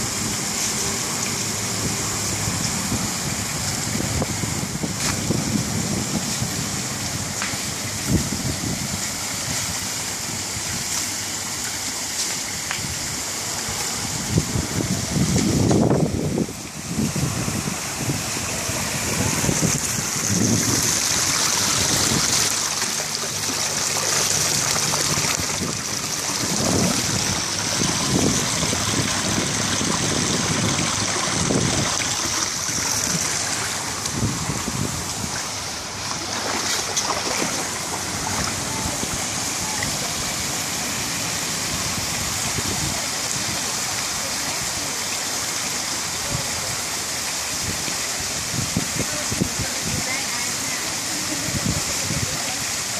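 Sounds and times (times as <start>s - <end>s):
waterfall rushing and splashing: 0.0s - 52.9s.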